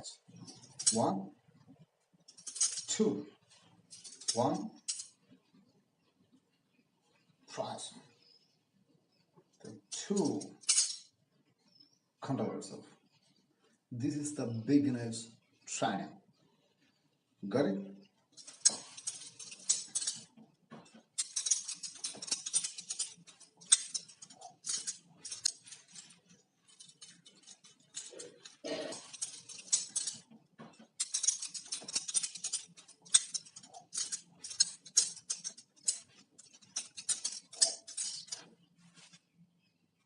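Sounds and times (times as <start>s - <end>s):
butterfly knife clicking and rattling: 2.3s - 2.9s, 10.4s - 11.1s, 18.4s - 20.3s, 21.2s - 30.2s, 30.8s - 38.4s.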